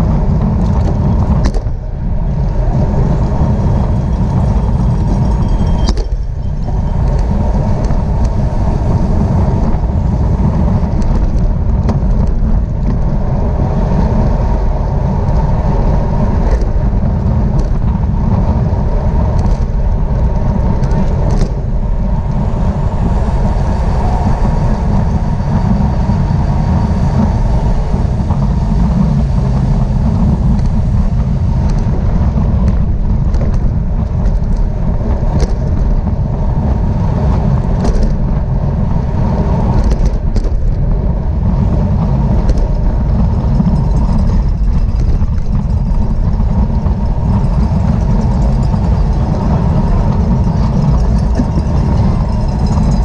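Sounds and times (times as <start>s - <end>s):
wind rumbling on microphone: 0.0s - 53.0s.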